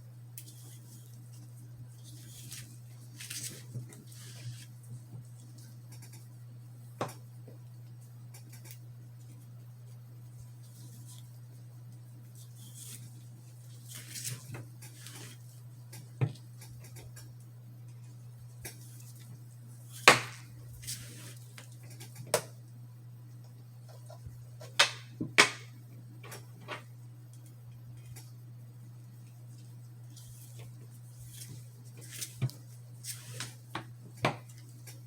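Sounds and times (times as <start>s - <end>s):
steady low hum: 0.0s - 35.0s
soft rubbing sounds: 0.5s - 5.7s, 10.4s - 15.7s, 20.8s - 21.6s, 29.2s - 33.7s.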